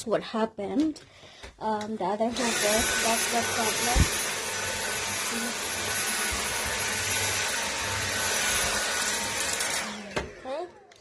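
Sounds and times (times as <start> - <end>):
vacuum cleaner motor whining: 2.3 - 11.0.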